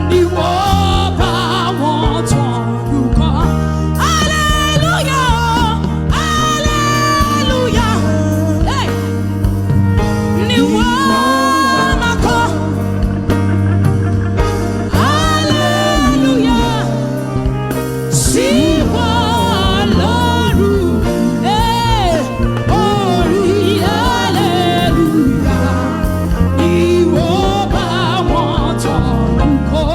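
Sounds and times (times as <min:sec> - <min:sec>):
sustained instrumental accompaniment: 0:00.0 - 0:29.9
person singing ornamented lines: 0:14.9 - 0:29.6.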